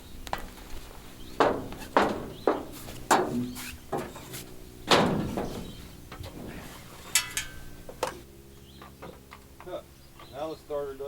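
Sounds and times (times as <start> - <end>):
sharp knocks and clanks: 1.4 - 8.2
ringing metallic clang: 4.9 - 8.2.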